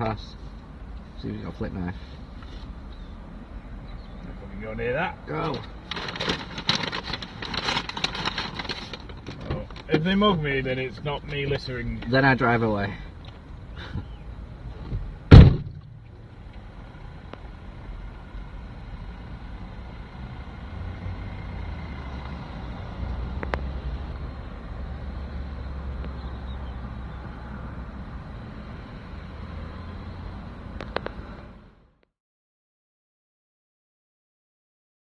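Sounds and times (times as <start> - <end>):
car engine running: 13.2 - 20.7
car door slamming: 14.9 - 16.1.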